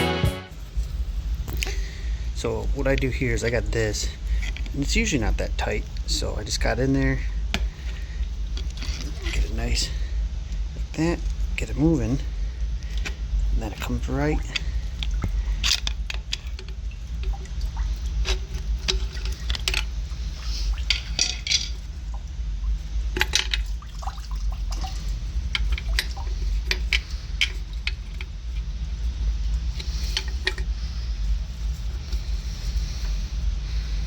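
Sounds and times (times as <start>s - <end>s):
water trickling and splashing: 13.6s - 31.8s
metal parts clinking: 15.6s - 16.7s, 20.9s - 21.8s.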